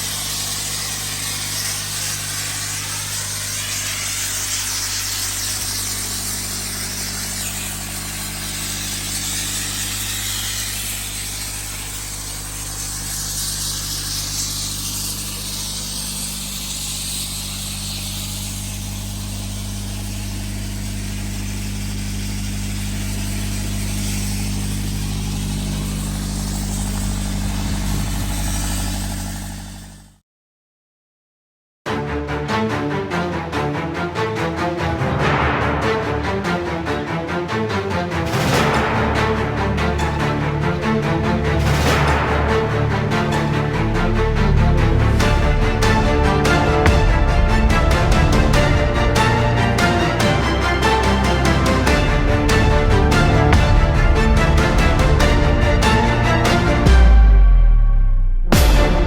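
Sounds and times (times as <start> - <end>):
blast nozzle hissing: 0.0 - 30.1
air compressor engine drone: 0.0 - 30.2, 38.4 - 59.0.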